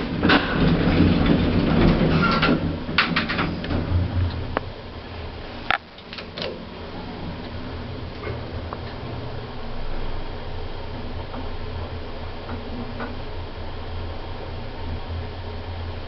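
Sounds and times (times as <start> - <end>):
lift doors rattling shut: 0.0 - 4.6, 6.0 - 9.4
lift machinery hum: 0.0 - 16.0.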